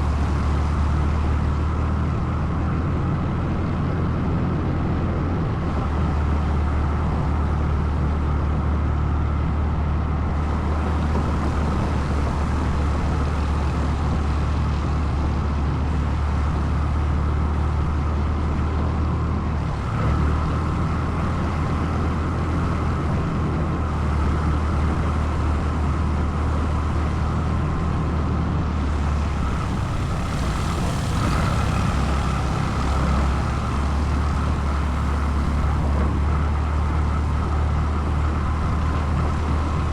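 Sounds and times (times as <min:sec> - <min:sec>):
atv engine droning: 0:10.3 - 0:39.9.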